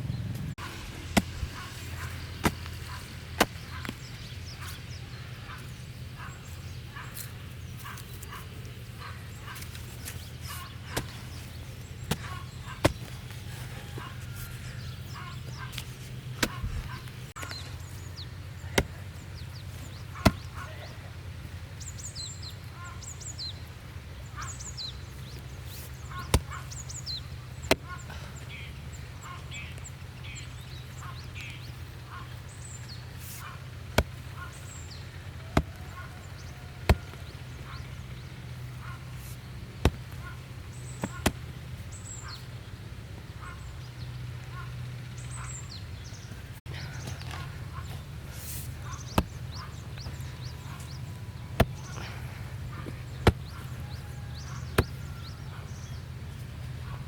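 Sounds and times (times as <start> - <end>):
sharp chopping knocks: 12.1 - 13.1, 16.4 - 17.1, 20.2 - 20.5, 35.6 - 35.8, 36.9 - 37.2, 49.0 - 49.6, 51.6 - 52.0, 53.2 - 53.6, 54.7 - 55.0.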